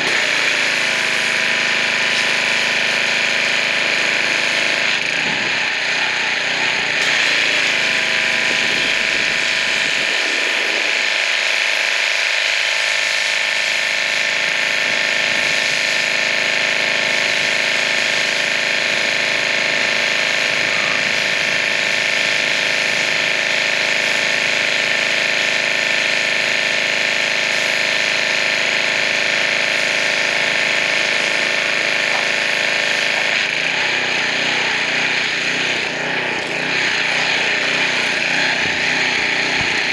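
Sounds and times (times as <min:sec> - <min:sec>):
water jet hissing: 0:00.0 - 0:05.5, 0:27.4 - 0:39.9
pressure washer motor and pump drone: 0:00.0 - 0:39.9.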